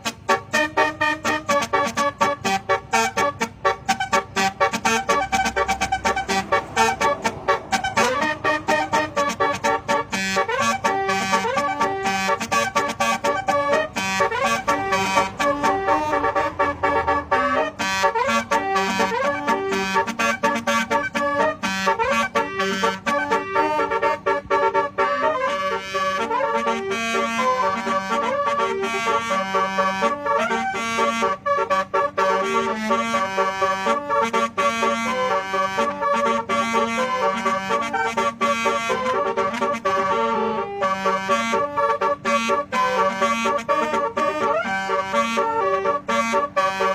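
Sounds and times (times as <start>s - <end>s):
musical air horn playing tune: 0.0s - 46.9s.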